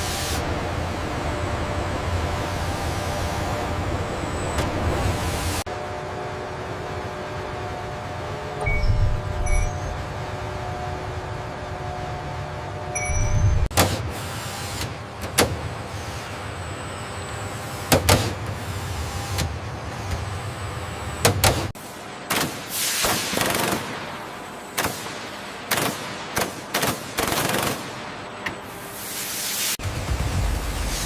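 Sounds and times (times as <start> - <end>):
machinery humming: 0.0 - 22.3.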